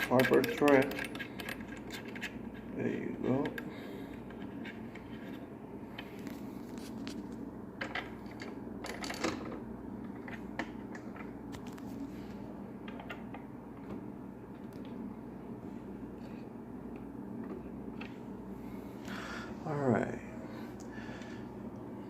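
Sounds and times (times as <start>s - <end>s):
small parts clicking and scraping: 0.0s - 2.7s
low background hum: 0.0s - 22.0s.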